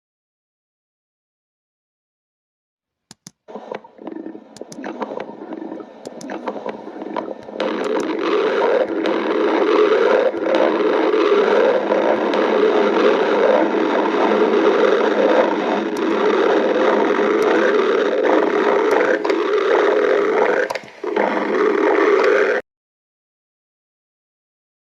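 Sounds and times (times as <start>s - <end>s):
stomach growling: 3.5s - 22.6s.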